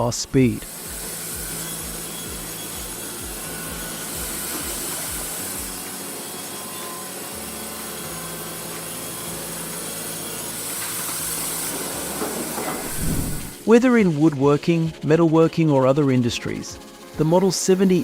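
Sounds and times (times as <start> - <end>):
band sawmill cutting wood: 0.0 - 18.0.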